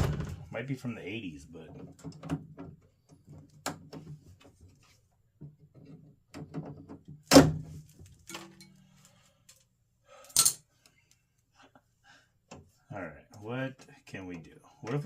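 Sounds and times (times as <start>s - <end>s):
small clicks and rustling: 7.8s - 9.7s.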